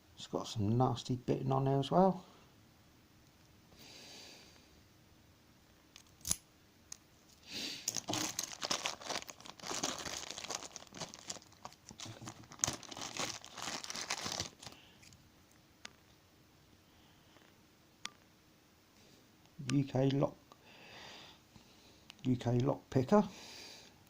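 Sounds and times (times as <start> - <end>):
packaging crinkling and tearing: 7.9 - 15.2.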